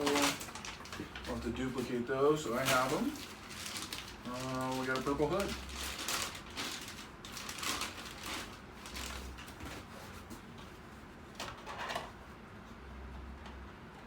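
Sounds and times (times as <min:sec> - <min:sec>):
plastic packaging rustling: 0:00.0 - 0:10.5.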